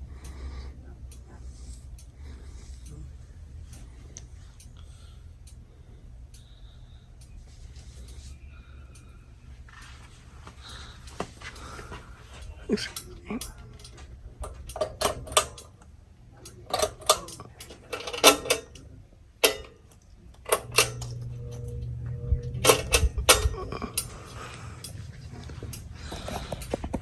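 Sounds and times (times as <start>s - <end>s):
low hum: 0.0s - 27.0s
sharp clicks and clatters: 12.4s - 21.9s, 22.5s - 27.0s.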